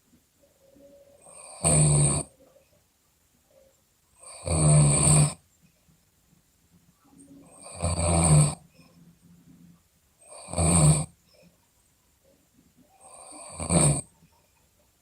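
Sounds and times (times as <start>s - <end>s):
person snoring loudly: 1.2s - 2.3s, 4.2s - 5.4s, 7.5s - 8.6s, 10.3s - 11.2s, 13.0s - 14.1s.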